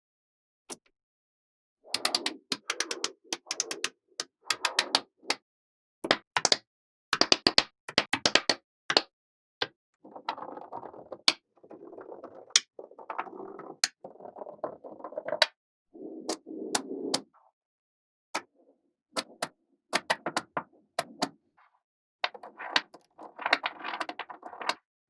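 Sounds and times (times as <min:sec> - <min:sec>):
balls rolling and rattling: 0:10.0 - 0:15.5, 0:22.2 - 0:24.8.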